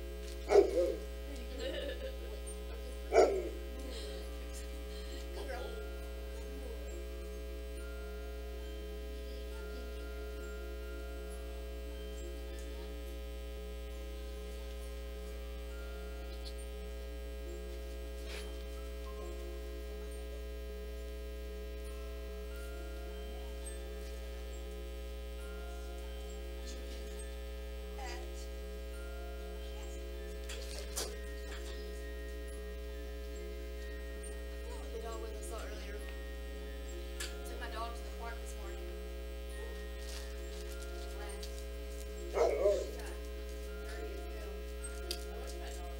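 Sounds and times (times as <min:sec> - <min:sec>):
electrical mains hum: 0:00.0 - 0:45.9.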